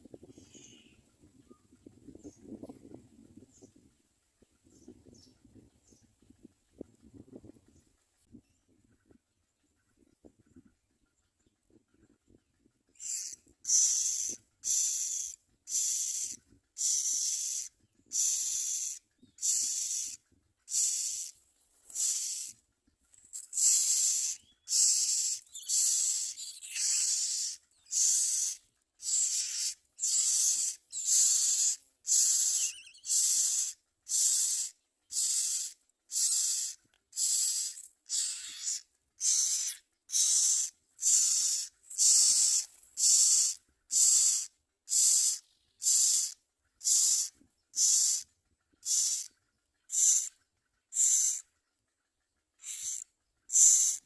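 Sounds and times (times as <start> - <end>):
nestlings begging with rasps: 12.9 - 51.6, 52.5 - 54.0.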